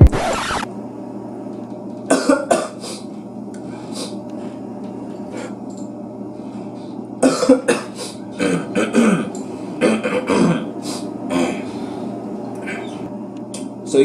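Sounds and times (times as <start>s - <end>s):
person coughing hard: 2.1s - 2.8s, 7.2s - 10.7s, 11.3s - 11.7s.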